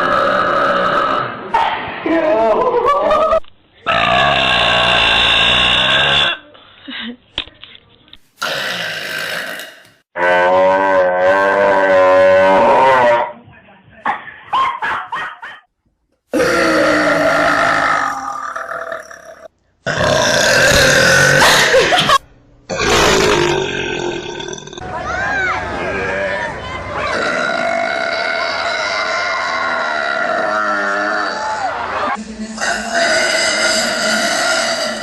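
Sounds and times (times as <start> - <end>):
loud drawn-out burps: 0.0 - 1.4, 3.9 - 6.4, 8.4 - 13.3, 16.3 - 24.8, 27.1 - 29.2, 29.8 - 31.3, 32.6 - 35.0.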